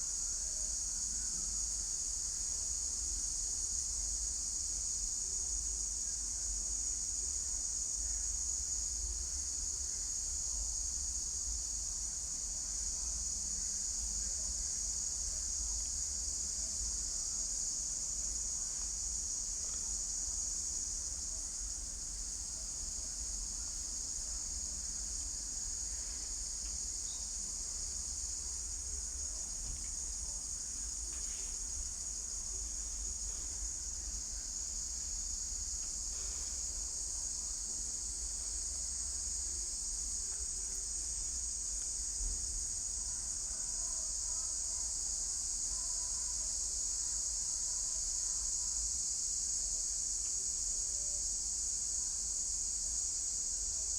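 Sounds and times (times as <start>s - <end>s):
insects droning: 0.0s - 53.9s.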